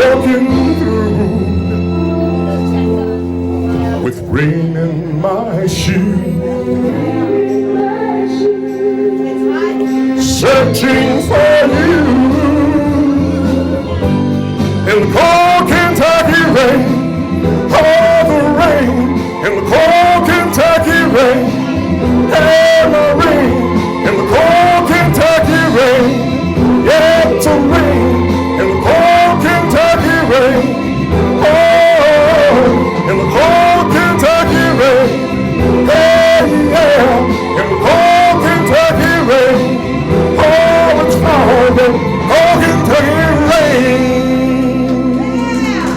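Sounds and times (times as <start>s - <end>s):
country-pop instrumental music: 0.0s - 45.9s.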